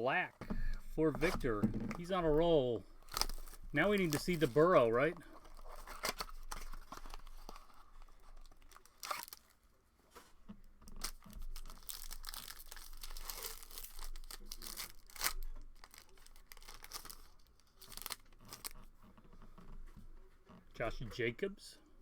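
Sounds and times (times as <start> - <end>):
plastic wrapping crinkling: 0.4 - 19.0
packaging tearing: 1.1 - 9.6, 10.9 - 18.8.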